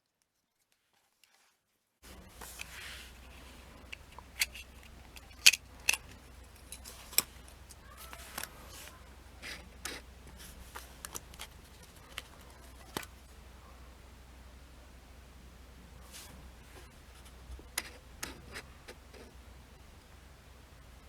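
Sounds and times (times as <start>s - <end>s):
faint steady hum: 2.0s - 21.0s
small hard parts clicking: 2.2s - 10.0s.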